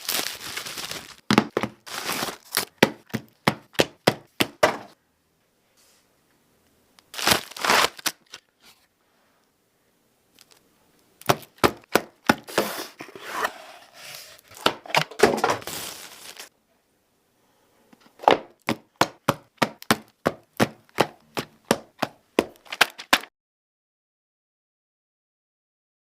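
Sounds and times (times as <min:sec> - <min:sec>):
rustling handling noise: 0:00.0 - 0:03.3, 0:07.1 - 0:08.9, 0:10.3 - 0:16.5, 0:22.4 - 0:23.3.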